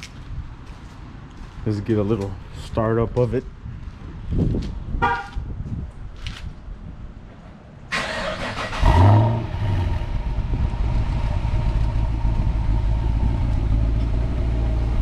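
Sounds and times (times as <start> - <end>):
car engine revving and idling: 8.0 - 15.0.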